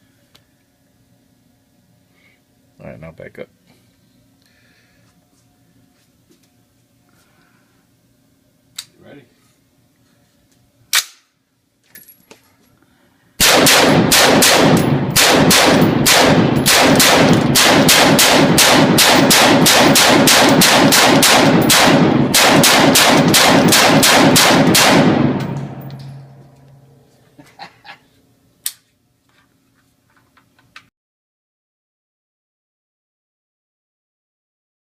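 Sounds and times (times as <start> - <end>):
sharp crack: 10.9 - 11.3, 13.4 - 26.8
rapid gunfire: 13.4 - 25.6.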